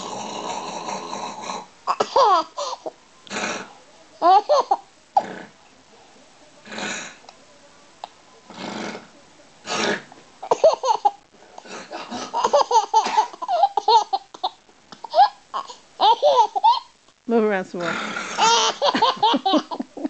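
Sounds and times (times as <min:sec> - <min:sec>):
mock snores: 0:00.0 - 0:01.7, 0:03.3 - 0:03.7, 0:05.2 - 0:05.6, 0:06.6 - 0:07.2, 0:08.5 - 0:10.1, 0:17.8 - 0:18.6
baby laughing: 0:01.9 - 0:02.8, 0:04.2 - 0:04.8, 0:10.4 - 0:11.2, 0:12.1 - 0:16.9, 0:18.3 - 0:20.0.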